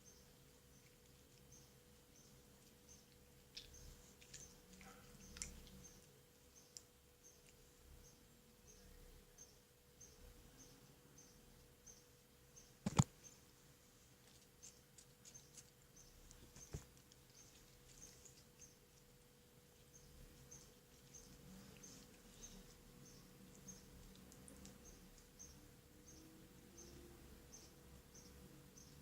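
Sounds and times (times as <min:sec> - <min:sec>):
soft rustles: 0:12.8 - 0:23.0.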